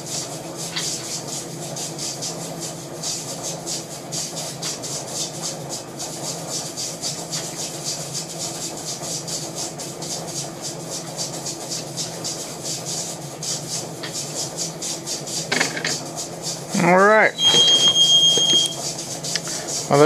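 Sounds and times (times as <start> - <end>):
machine hum: 10.9 - 20.0.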